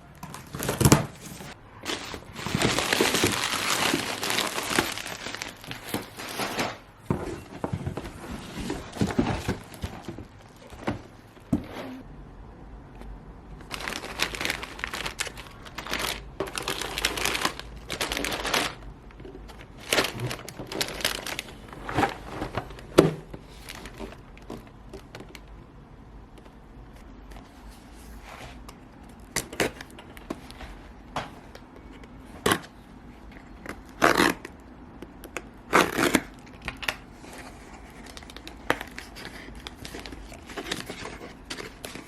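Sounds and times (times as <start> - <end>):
packaging crinkling: 0.1 - 11.1, 13.6 - 25.4, 35.3 - 42.0.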